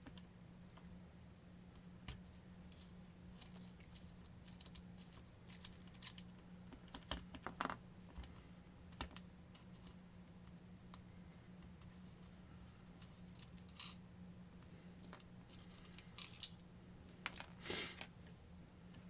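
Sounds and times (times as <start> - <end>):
low steady hum: 0.0 - 19.0
small parts clicking and tapping: 2.0 - 11.9, 13.0 - 14.0, 15.0 - 18.2.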